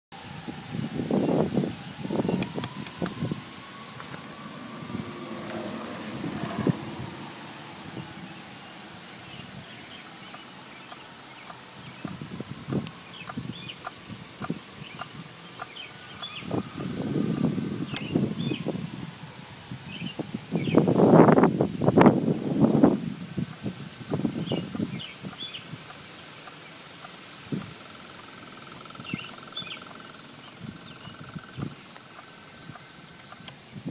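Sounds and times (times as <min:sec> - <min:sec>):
birds chirping: 0:01.2 - 0:19.3, 0:19.9 - 0:20.9, 0:24.1 - 0:33.9
motorcycle electrics clicking: 0:02.3 - 0:03.2, 0:09.9 - 0:18.1, 0:22.0 - 0:33.6
fast faint electrical buzz: 0:25.9 - 0:32.5
faint bird chirps: 0:28.3 - 0:33.8.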